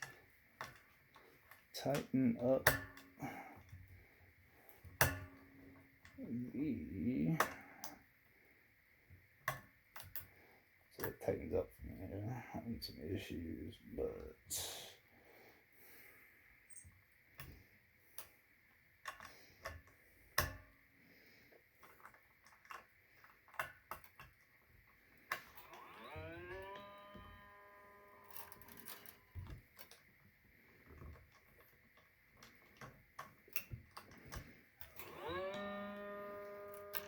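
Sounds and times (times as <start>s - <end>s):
small metal clicks and taps: 19.0s - 20.7s, 21.8s - 24.6s
guitar string ringing: 25.7s - 29.6s.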